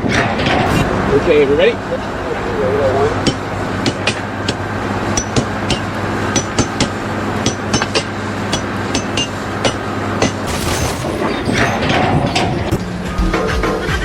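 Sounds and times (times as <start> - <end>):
engine humming: 0.0 - 14.0
sharp metallic knocks and clinks: 3.2 - 12.8.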